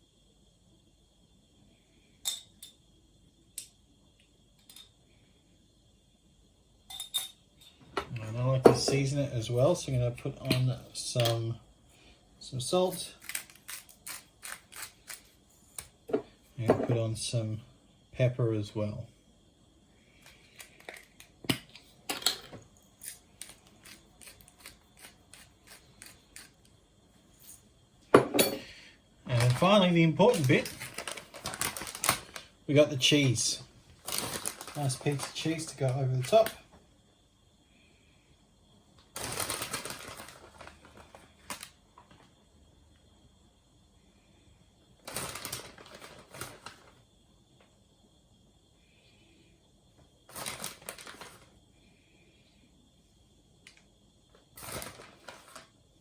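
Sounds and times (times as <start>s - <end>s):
pepper grinder clicking: 13.2s - 15.2s, 23.0s - 26.5s.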